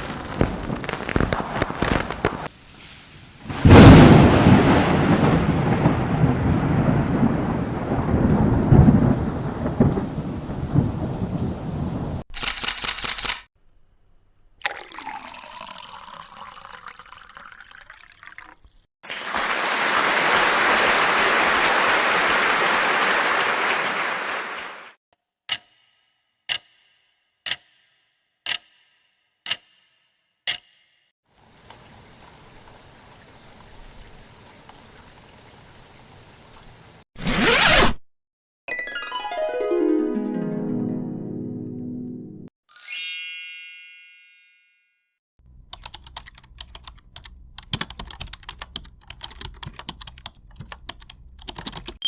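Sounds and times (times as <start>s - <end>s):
faint hiss: 1.8s - 3.5s
sharp ticks: 26.5s - 29.9s, 30.5s - 31.0s.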